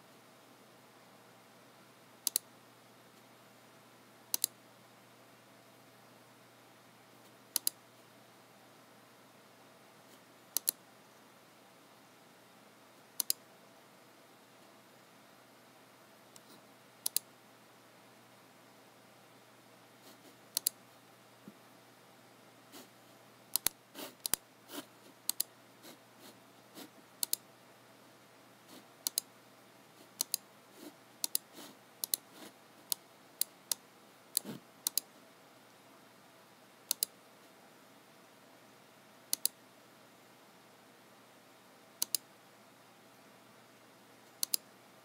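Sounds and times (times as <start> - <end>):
mouse button clicking: 44.4 - 44.6.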